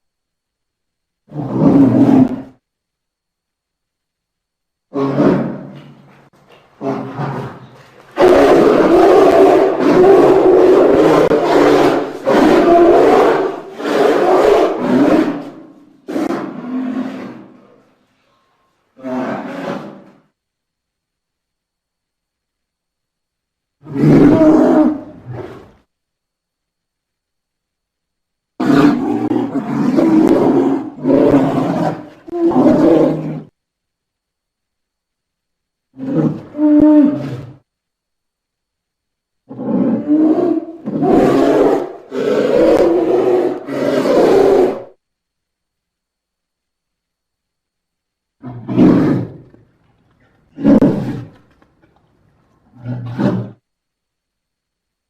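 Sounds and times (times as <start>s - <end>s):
bear roaring: 1.3s - 2.6s, 4.9s - 6.0s, 6.8s - 17.8s, 19.0s - 20.2s, 23.8s - 25.8s, 28.6s - 33.5s, 35.9s - 37.6s, 39.5s - 45.0s, 48.4s - 49.6s, 50.2s - 51.4s, 52.6s - 53.6s.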